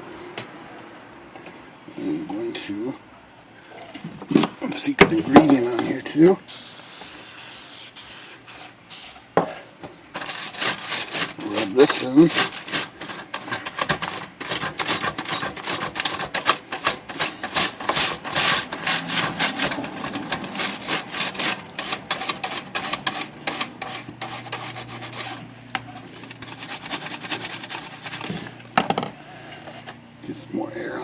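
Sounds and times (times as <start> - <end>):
brush scrubbing plastic keys: 10.2 - 28.4.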